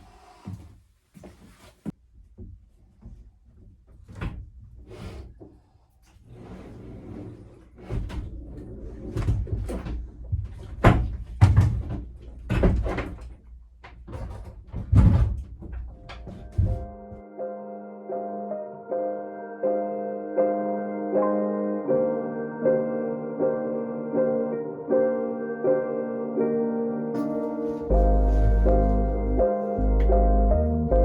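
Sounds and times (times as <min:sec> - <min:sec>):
knocks bumps and scrapes: 0:09.1 - 0:17.2.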